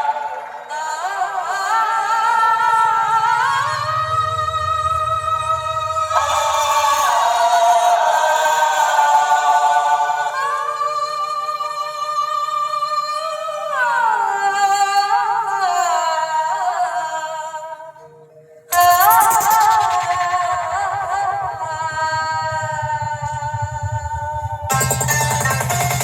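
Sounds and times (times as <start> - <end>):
vocal-like tones sliding in pitch: 1.9 - 8.4, 18.7 - 26.0.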